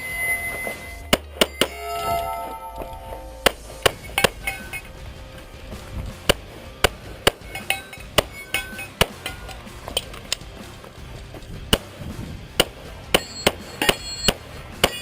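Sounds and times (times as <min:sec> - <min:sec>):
faint metallic clinks: 0:04.0 - 0:05.0, 0:07.4 - 0:10.4.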